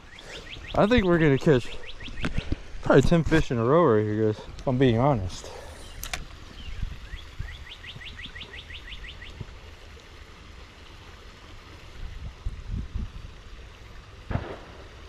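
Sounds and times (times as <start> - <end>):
bird calling rising notes: 0.0 - 2.4, 5.6 - 9.4
wind rumble on microphone: 6.2 - 8.3, 11.8 - 14.8
splash-like burst: 14.3 - 15.0.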